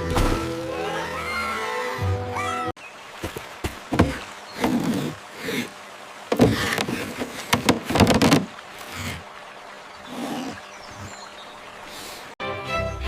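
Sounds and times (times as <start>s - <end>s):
knocks thuds and scraping: 3.2s - 5.2s, 6.3s - 8.6s
background music: 12.4s - 13.0s.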